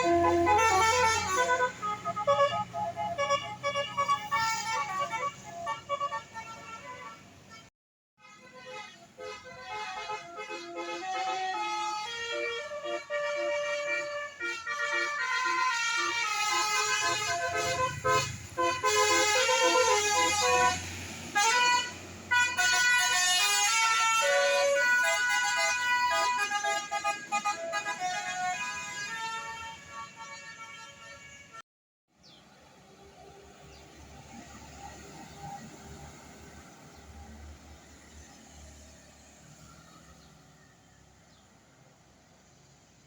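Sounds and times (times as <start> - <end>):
bus engine rumble: 0.0 - 7.7, 8.4 - 31.0, 32.2 - 43.0
bus musical horn: 0.0 - 31.6.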